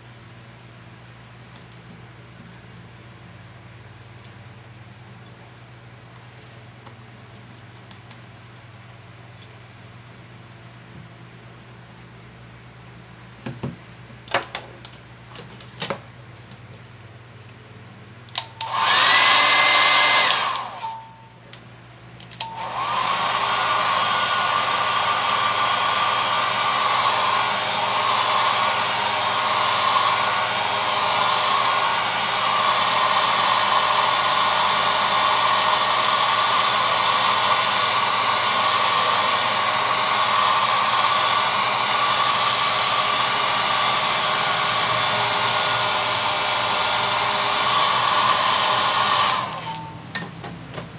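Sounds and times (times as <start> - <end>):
hot-air blower rushing with whine: 18.4 - 21.1, 22.4 - 50.9.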